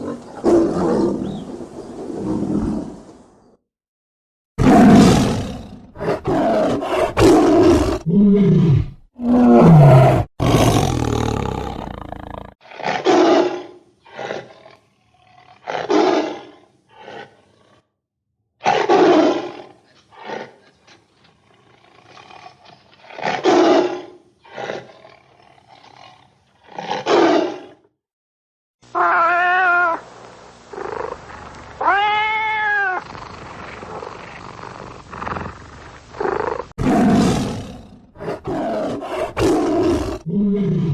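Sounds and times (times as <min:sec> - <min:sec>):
tigers roaring and growling: 0:04.6 - 0:17.8, 0:36.2 - 0:40.9.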